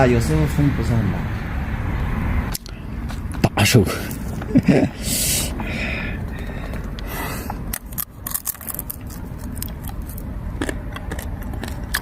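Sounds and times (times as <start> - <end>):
plastic snack packet crinkling: 7.9 - 10.2.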